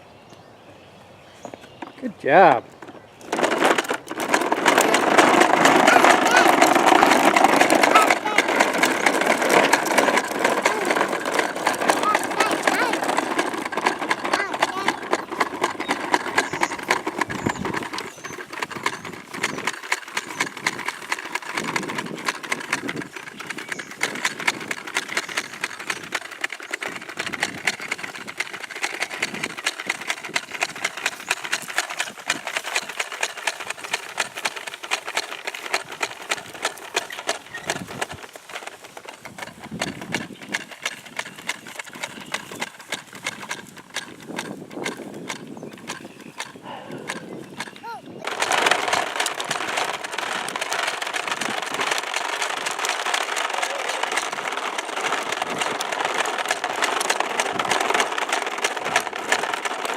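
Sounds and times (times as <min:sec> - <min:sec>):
push lawnmower clicking: 0:01.4 - 0:59.9.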